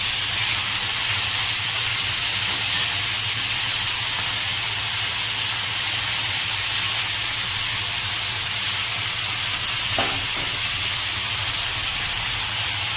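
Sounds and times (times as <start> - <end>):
onions sizzling in oil: 0.0 - 12.9
utensil knocking against pan: 10.0 - 10.6.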